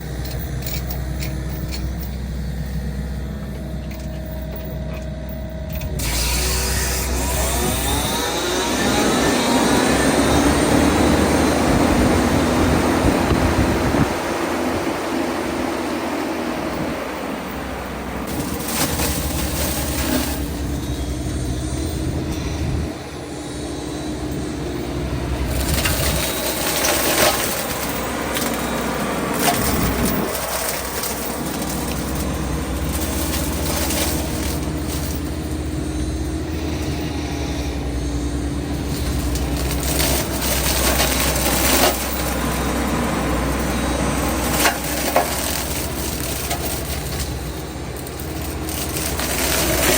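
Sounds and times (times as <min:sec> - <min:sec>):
excavator diesel engine humming: 0:00.0 - 0:49.9
flail mulcher whining: 0:00.0 - 0:49.9.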